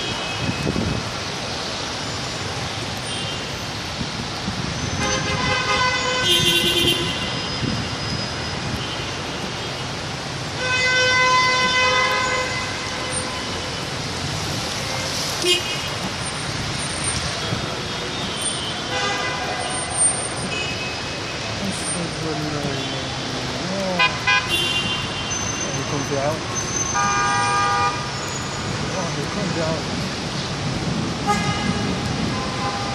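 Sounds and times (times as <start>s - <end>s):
traffic noise: 0.0s - 32.9s
car horns honking: 5.0s - 7.5s, 24.0s - 25.4s.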